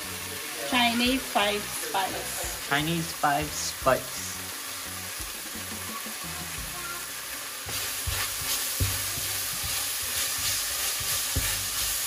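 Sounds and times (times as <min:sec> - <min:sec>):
vegetables sizzling in oil: 0:00.0 - 0:12.0
utensil knocking against pan: 0:07.7 - 0:11.8.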